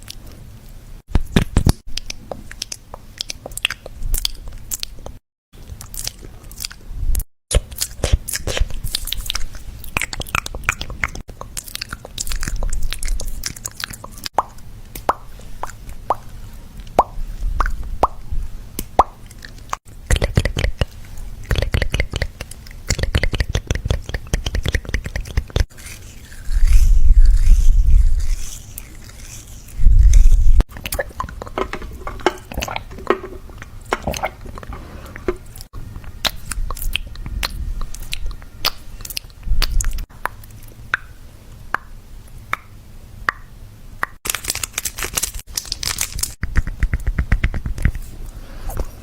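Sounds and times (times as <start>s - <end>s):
crunching and chewing: 19.2s - 34.7s.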